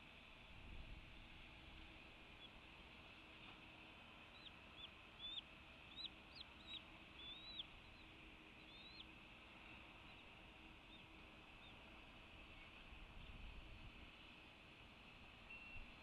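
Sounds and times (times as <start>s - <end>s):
faint steady hiss: 0.0s - 16.0s
bird chirping: 4.3s - 9.1s, 10.0s - 11.8s, 15.4s - 16.0s.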